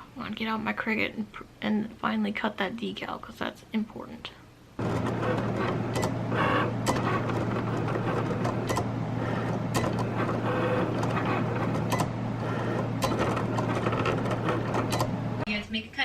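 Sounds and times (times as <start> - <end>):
cutting machine motor hum: 4.8 - 15.4
sharp machine clicks: 4.9 - 15.1.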